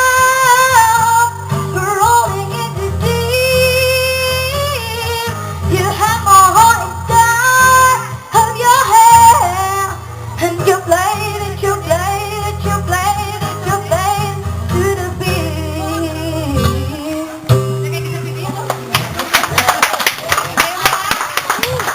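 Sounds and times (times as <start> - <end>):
song with heavy bass: 14.0 - 19.2.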